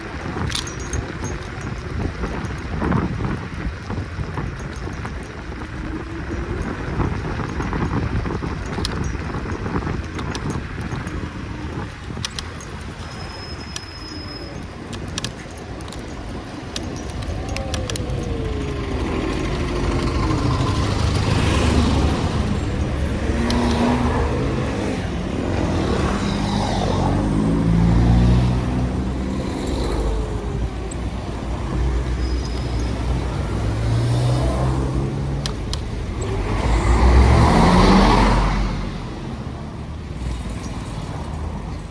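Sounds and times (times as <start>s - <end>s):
car engines idling and accelerating: 0.0s - 41.9s
vehicle passing close by: 16.8s - 30.7s, 31.5s - 41.6s.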